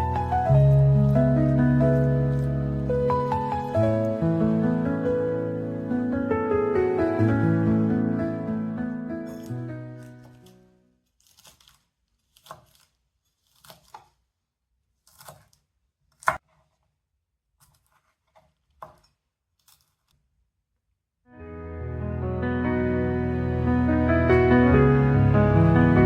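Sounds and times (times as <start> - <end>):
knife cutting on cutting board: 11.2 - 14.2, 15.0 - 16.9, 17.6 - 20.1.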